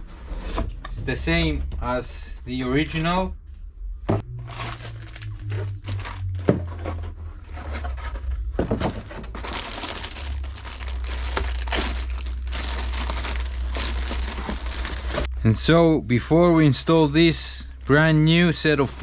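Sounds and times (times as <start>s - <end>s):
steady low hum: 0.0s - 19.0s
packaging crinkling and rustling: 4.4s - 6.8s, 8.6s - 15.3s.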